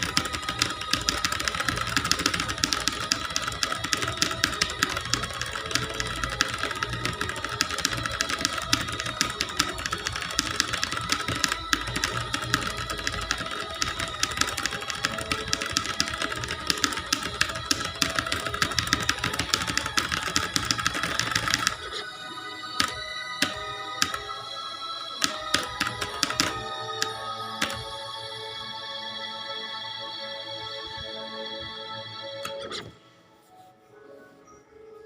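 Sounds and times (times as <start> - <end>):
keyboard key clicks: 25.2 - 27.9.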